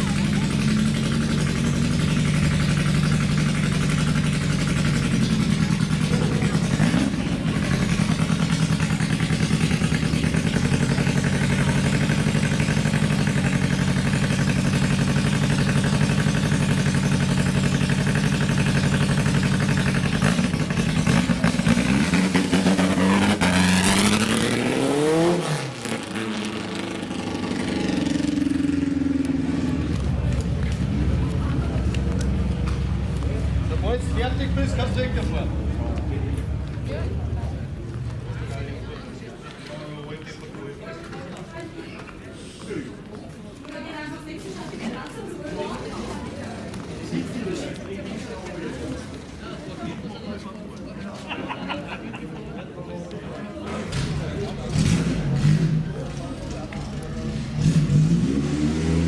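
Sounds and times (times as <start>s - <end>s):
race car engine revving: 0.0s - 39.0s, 53.7s - 59.0s
second engine rising: 0.0s - 39.3s, 53.7s - 59.0s.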